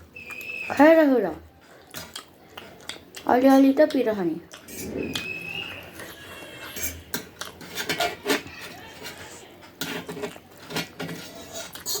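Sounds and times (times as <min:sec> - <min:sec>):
cutlery clinking on a dish: 0:06.6 - 0:12.0.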